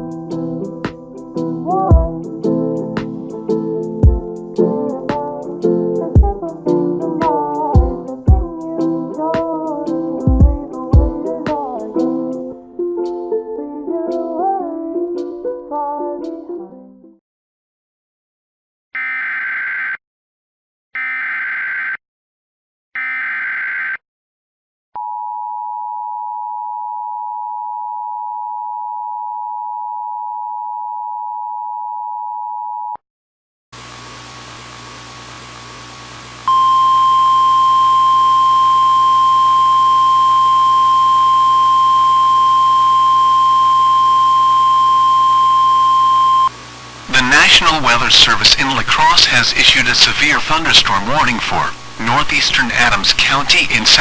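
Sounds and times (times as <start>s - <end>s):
hum with static: 33.8s - 54.0s
steady warning alarm tone: 36.4s - 50.8s
two-tone attention signal: 36.5s - 46.5s.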